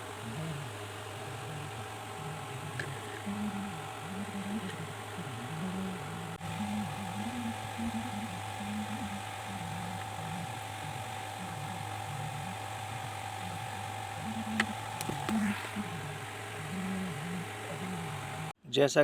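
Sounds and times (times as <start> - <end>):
steady hum: 0.0 - 18.6.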